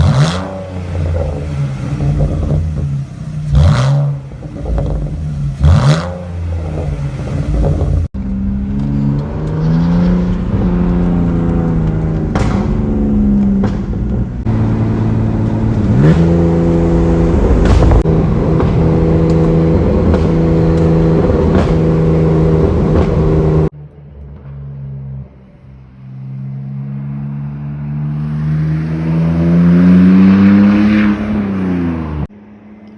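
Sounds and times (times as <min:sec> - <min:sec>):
car exhaust revving: 0:00.0 - 0:23.7.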